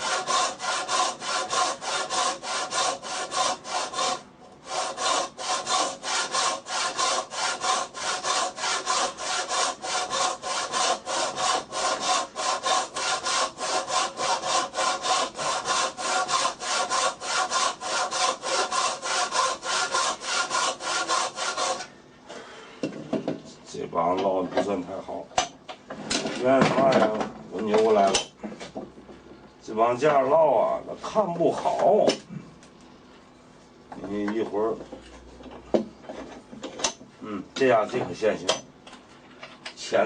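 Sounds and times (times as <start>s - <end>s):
hand saw cutting wood: 0.0s - 21.9s.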